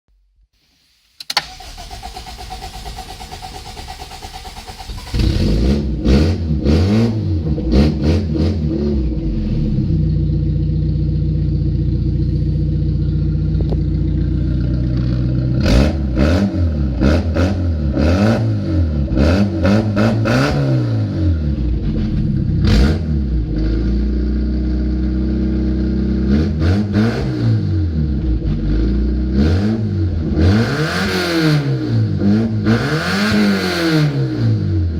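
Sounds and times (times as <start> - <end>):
ignition click: 1.2 - 5.2
starter motor cranking: 1.3 - 5.6
car engine revving and idling: 1.4 - 34.9.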